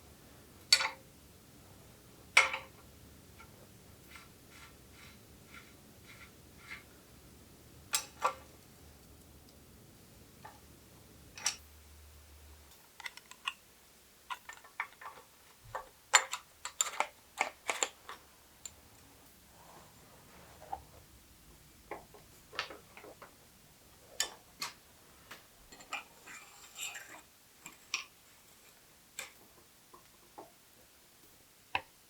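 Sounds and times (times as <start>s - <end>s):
clicks of tools and bicycle parts: 0.7s - 1.0s, 11.4s - 11.6s.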